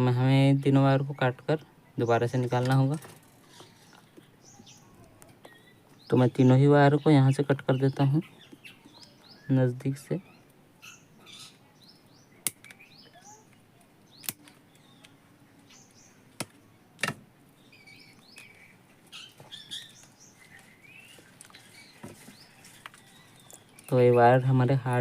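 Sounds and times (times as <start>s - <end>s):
small birds chirping: 0.0s - 25.0s
wire cutters snipping wire: 12.4s - 12.8s, 14.2s - 14.6s.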